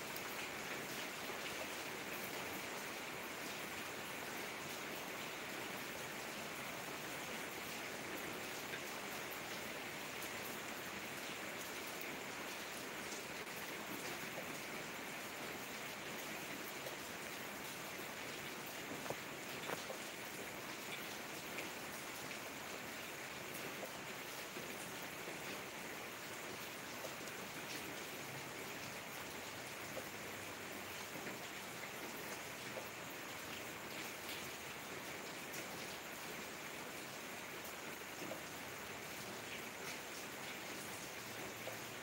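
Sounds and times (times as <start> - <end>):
rain falling: 0.0 - 42.0
raindrop ticks: 18.9 - 20.5.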